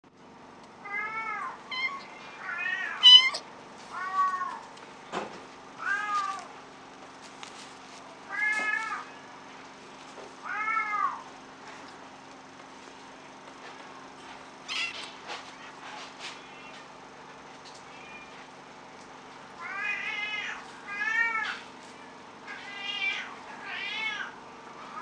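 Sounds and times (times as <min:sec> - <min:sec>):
kitten meowing: 0:00.9 - 0:03.4, 0:14.7 - 0:15.1.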